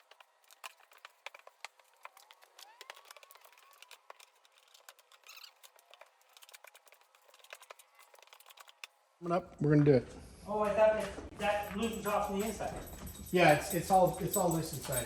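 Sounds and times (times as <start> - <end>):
faint clicks and ticks: 0.0 - 9.0.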